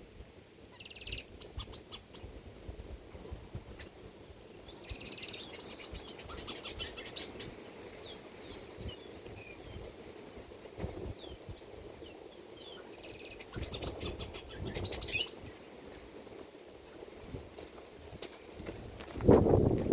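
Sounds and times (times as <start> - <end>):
small birds chirping: 0.6 - 16.2.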